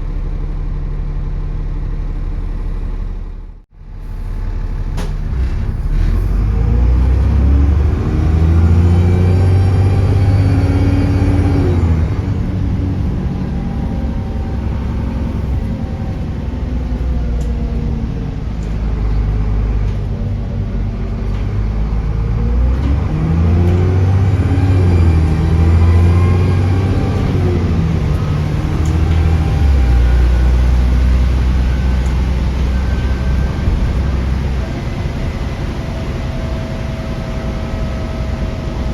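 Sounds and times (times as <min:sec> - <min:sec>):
bus diesel engine accelerating: 0:00.0 - 0:38.9
turbocharger whistling: 0:05.3 - 0:19.1, 0:21.8 - 0:38.9.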